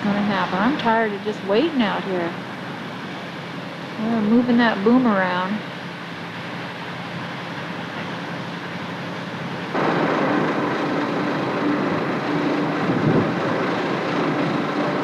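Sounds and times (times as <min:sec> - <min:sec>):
truck engine revving: 0:09.8 - 0:15.0.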